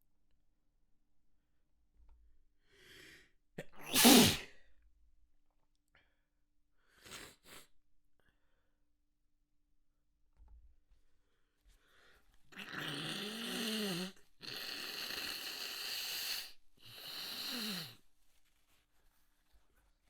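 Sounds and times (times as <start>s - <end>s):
in-breath: 2.6s - 3.4s, 6.8s - 8.8s, 11.2s - 12.4s
person sneezing: 3.6s - 4.6s.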